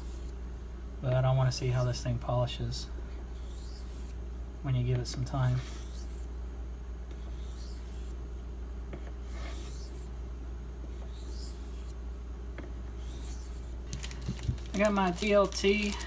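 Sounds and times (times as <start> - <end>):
steady low hum: 0.0 - 16.0
knife scraping on whetstone: 3.4 - 4.2, 7.3 - 8.2, 9.3 - 10.1, 11.1 - 12.0.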